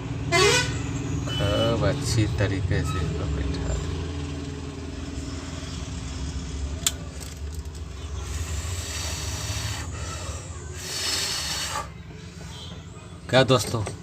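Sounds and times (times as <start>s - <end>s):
road traffic rumble: 0.0s - 14.0s
hiss: 8.2s - 11.9s.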